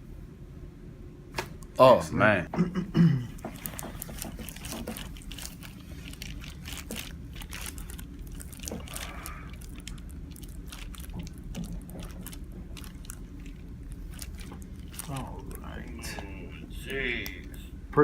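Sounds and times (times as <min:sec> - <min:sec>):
steady low hum: 0:00.0 - 0:18.0
small clicks and crinkles: 0:03.3 - 0:17.7.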